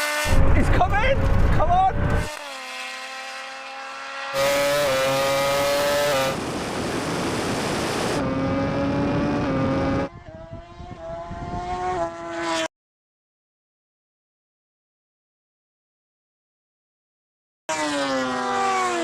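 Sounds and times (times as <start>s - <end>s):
high-pitched racing engine: 0.0s - 12.7s, 17.7s - 19.0s
wind and tyre rush: 0.2s - 2.3s, 4.3s - 12.6s.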